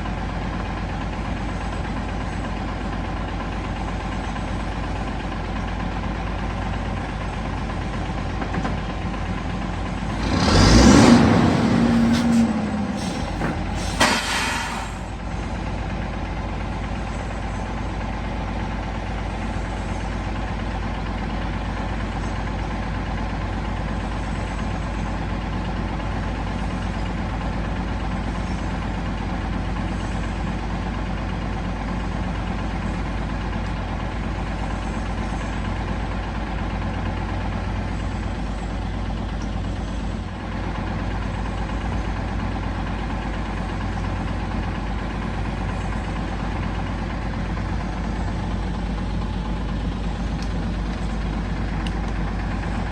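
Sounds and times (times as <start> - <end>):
diesel engine idling with knocking: 0.0 - 52.9
short sharp burst: 10.1 - 15.1.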